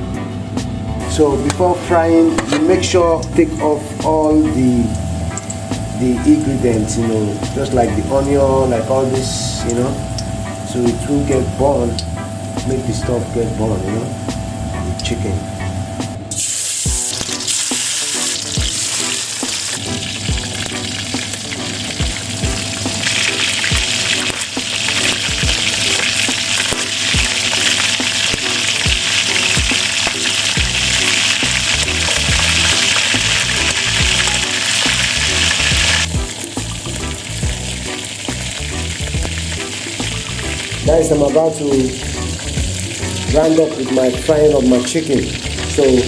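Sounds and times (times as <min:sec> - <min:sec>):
chicken sizzling in oil: 0:01.3 - 0:14.4, 0:16.3 - 0:46.0.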